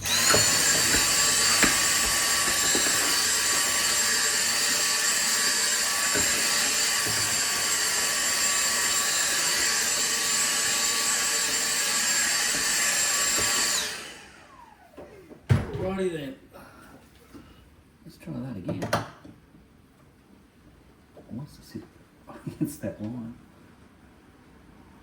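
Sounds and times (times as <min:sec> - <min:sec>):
electric motor whining: 0:00.0 - 0:14.8.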